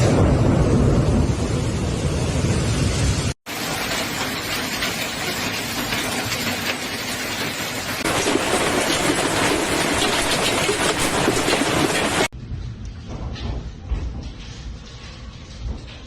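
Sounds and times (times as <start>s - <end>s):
heavy rain falling: 0.0s - 12.3s.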